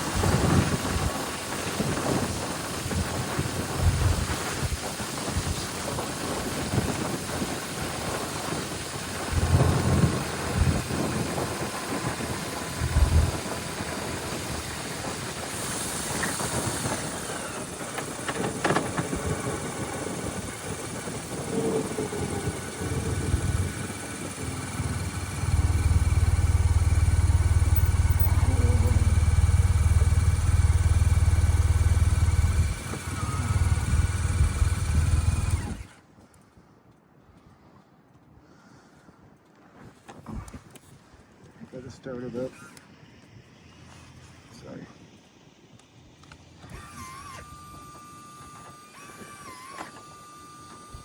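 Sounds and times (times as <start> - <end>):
wind buffeting microphone: 0.0 - 35.8
motorcycle engine riding: 0.0 - 36.0
loud low rumble: 12.8 - 14.0, 22.0 - 32.8.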